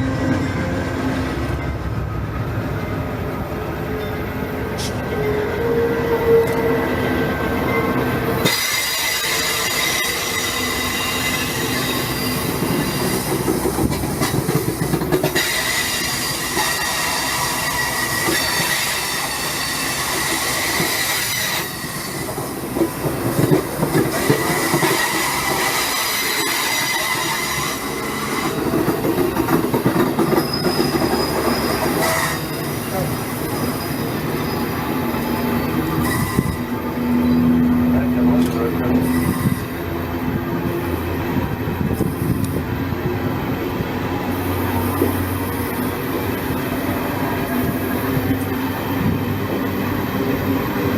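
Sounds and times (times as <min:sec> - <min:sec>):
train rumble and rattle: 0:00.0 - 0:50.9
train wheels squealing: 0:07.5 - 0:37.7, 0:38.8 - 0:39.8.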